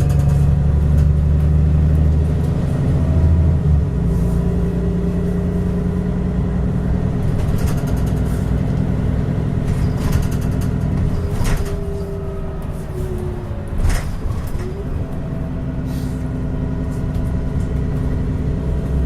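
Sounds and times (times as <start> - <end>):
bus engine whine: 0.0 - 19.0
rattling: 7.2 - 12.4.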